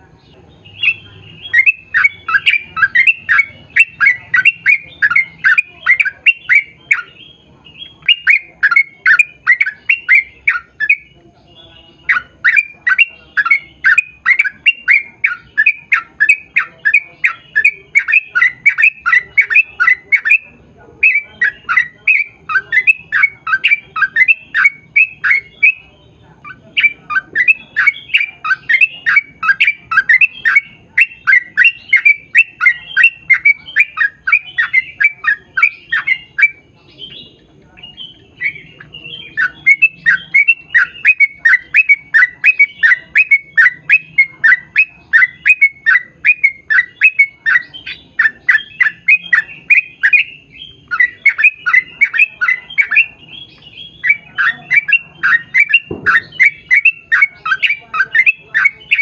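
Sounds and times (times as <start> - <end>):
bird singing rattling chirps: 0.0 - 59.0.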